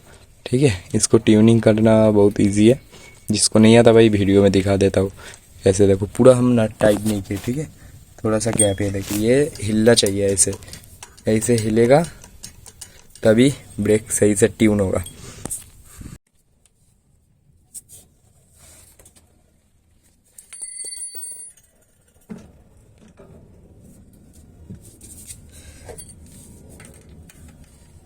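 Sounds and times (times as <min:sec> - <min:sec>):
low steady background noise: 0:00.0 - 0:28.0
high metallic ringing: 0:08.5 - 0:10.2, 0:20.4 - 0:21.8.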